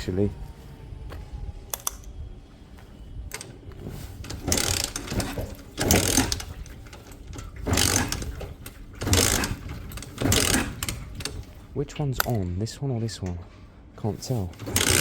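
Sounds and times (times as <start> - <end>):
motorcycle engine revving: 9.0 - 11.1.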